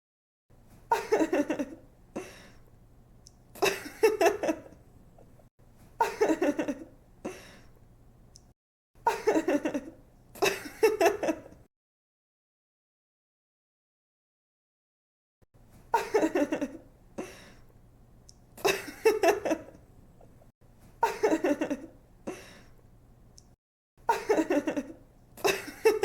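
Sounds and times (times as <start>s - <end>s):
woman giggling: 0.9s - 2.3s, 3.6s - 4.8s, 6.0s - 6.9s, 9.1s - 11.6s, 16.0s - 16.8s, 18.6s - 19.8s, 21.0s - 22.5s, 24.1s - 26.0s.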